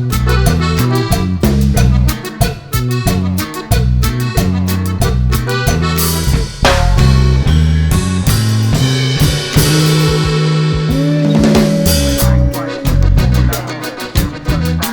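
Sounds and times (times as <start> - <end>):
upbeat music with drums and bass: 0.0 - 14.9
pitch-bending held note: 9.6 - 14.0.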